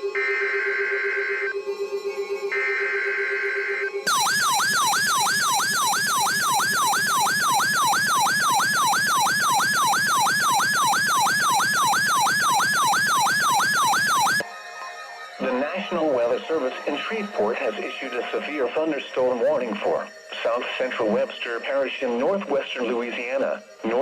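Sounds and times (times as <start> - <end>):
electronic siren falling sweep: 2.4 - 14.4.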